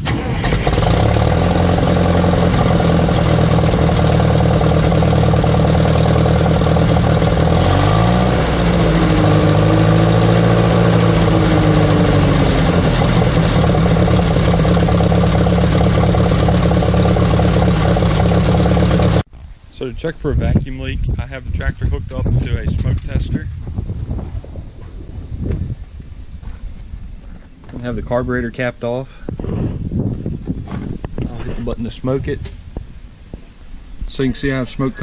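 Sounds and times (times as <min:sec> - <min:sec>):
tractor engine running: 0:00.0 - 0:19.3.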